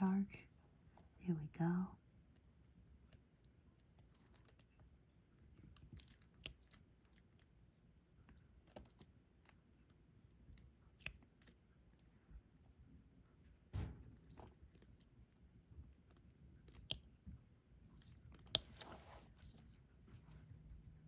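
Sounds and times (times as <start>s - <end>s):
stylus clicks and taps: 16.7s - 17.2s.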